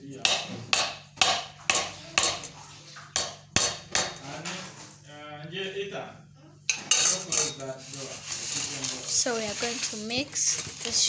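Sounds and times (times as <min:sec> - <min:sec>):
utensil knocking on mixing bowl: 0:00.2 - 0:02.5, 0:03.1 - 0:04.2.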